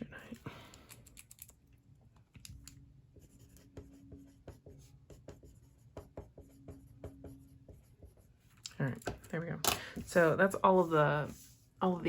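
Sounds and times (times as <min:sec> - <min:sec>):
pencil scratching on paper: 0:03.1 - 0:08.5, 0:10.1 - 0:12.0.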